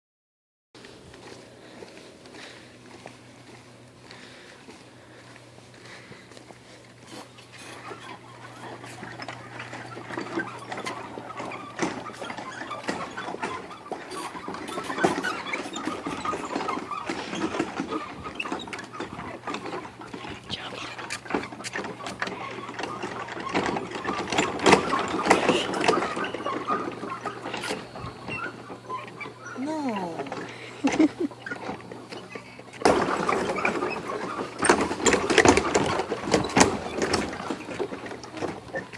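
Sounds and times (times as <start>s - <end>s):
steady low hum: 0.8s - 15.0s
bridge creaking and squeaking: 7.1s - 38.9s.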